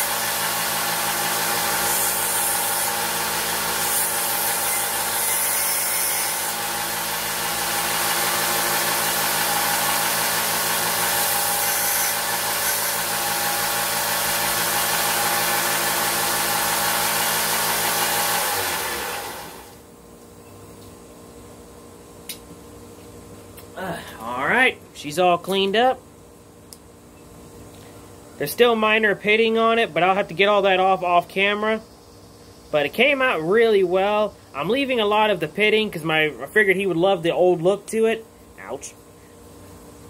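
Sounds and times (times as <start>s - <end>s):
power tool grinding metal: 0.0s - 19.8s
motor spinning down: 6.3s - 19.8s
faint hum: 19.7s - 40.0s.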